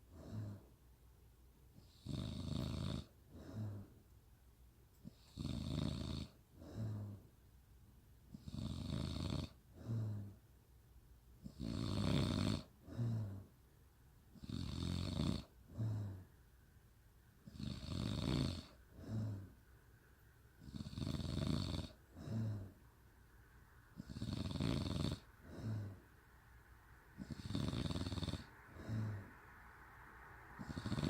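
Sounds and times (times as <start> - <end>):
woman snoring: 1.8 - 3.9, 5.2 - 7.2, 8.4 - 10.4, 11.5 - 13.5, 14.4 - 16.2, 17.5 - 19.5, 20.6 - 22.8, 24.0 - 26.0, 27.2 - 29.3, 30.6 - 31.0.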